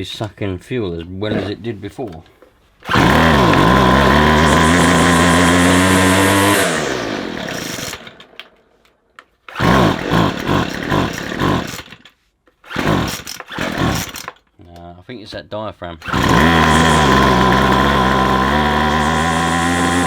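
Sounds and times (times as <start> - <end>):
two-stroke strimmer engine: 2.8 - 8.5, 9.5 - 14.4, 16.0 - 20.0.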